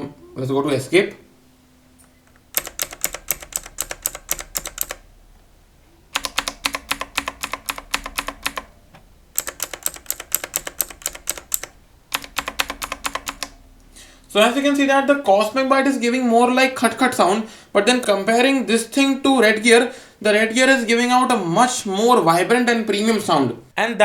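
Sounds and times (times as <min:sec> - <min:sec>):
mechanical keyboard key clicks: 0:02.3 - 0:05.0, 0:06.2 - 0:08.7, 0:09.4 - 0:13.5.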